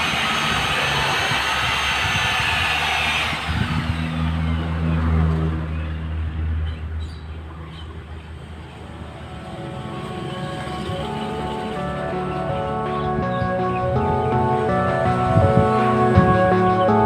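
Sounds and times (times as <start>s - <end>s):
polishing machine whining: 0.0s - 5.4s, 9.0s - 17.0s.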